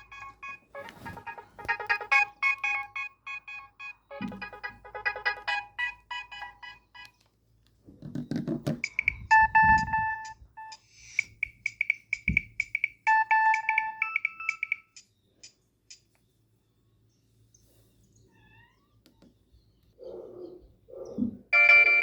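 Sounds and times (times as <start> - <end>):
mobile phone ringtone: 0.0 - 7.1, 8.8 - 11.2, 13.1 - 15.0, 21.5 - 22.0.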